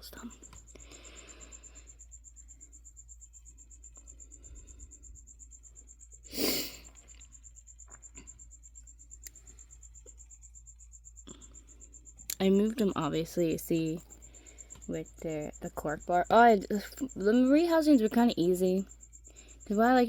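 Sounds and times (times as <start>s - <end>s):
cricket chirping: 0.0s - 20.0s.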